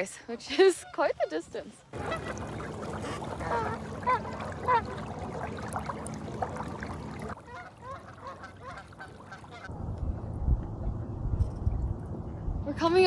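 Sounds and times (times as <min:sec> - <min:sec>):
geese honking: 0:02.0 - 0:09.7.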